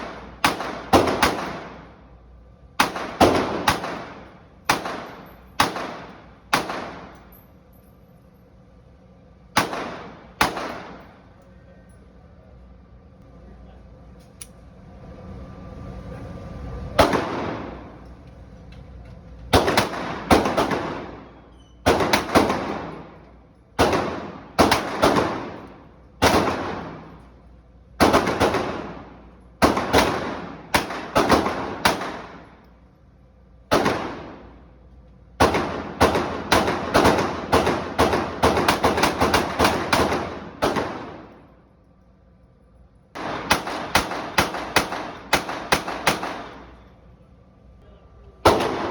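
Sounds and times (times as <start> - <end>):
gunshots with echo: 0.0 - 1.9, 2.8 - 7.2, 19.6 - 23.2, 23.8 - 27.2, 35.4 - 41.4, 43.2 - 46.7, 48.4 - 48.9.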